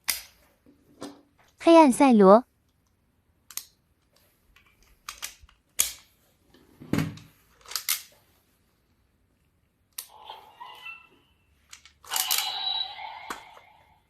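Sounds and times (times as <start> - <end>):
plastic toy clicks and snaps: 3.4 - 3.8, 5.0 - 6.1.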